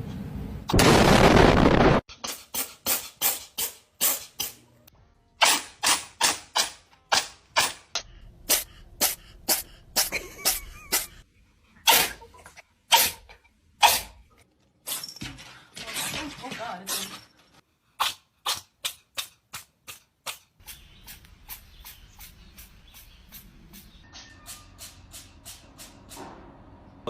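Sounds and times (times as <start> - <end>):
pet sneezing: 11.8 - 12.2, 12.9 - 13.2, 13.8 - 14.2.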